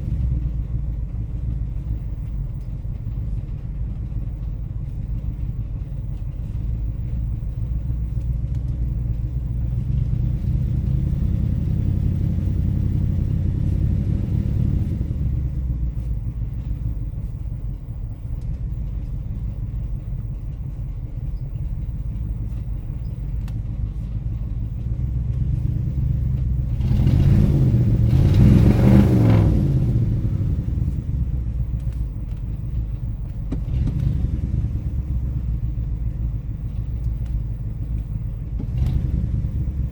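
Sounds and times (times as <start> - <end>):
car engine idling and revving: 0.0 - 39.9.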